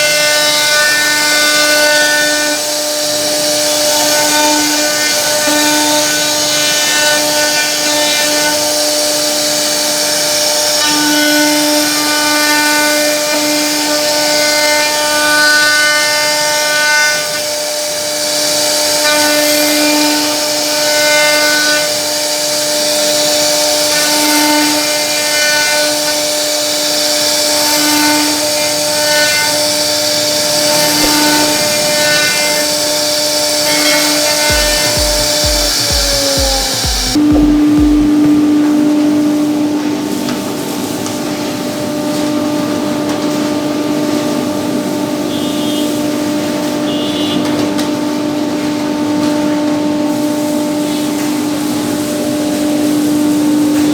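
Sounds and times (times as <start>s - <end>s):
router bit cutting wood: 0.0s - 38.3s
router spindle high whine: 17.2s - 38.6s.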